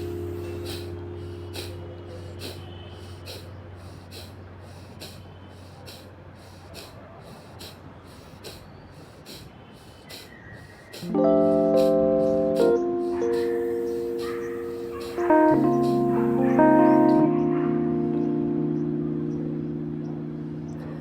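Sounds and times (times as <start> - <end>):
faint background music: 0.0 - 4.6, 11.0 - 21.0
forceful nasal exhalations: 0.0 - 12.0, 12.6 - 17.1.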